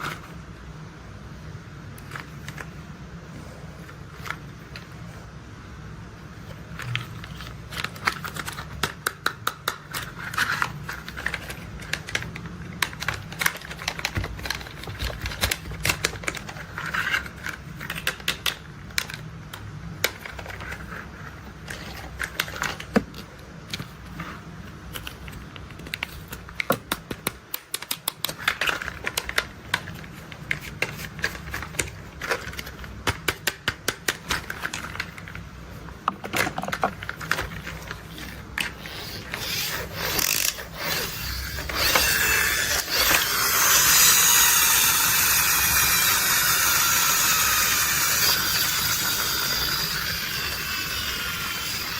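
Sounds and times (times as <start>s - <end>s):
low steady hum: 0.0s - 51.9s
plastic toy clicks and clacks: 7.8s - 20.9s, 25.0s - 35.3s.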